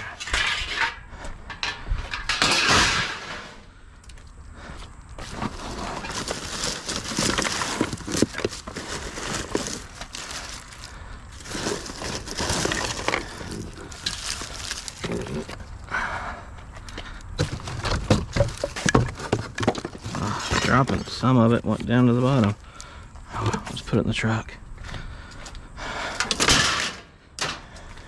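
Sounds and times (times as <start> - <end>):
scrap metal clanking: 0.0 - 3.7.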